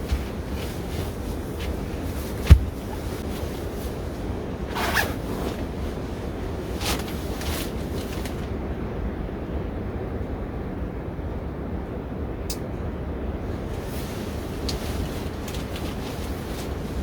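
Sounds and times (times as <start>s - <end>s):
rasping rustling sounds: 0.0s - 6.1s, 13.9s - 17.0s
sharp loud knock: 2.4s - 2.8s.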